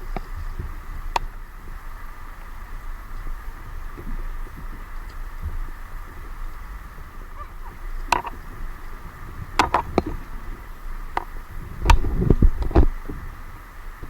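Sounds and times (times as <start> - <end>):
sharp knocks and clicks: 9.6 - 10.2.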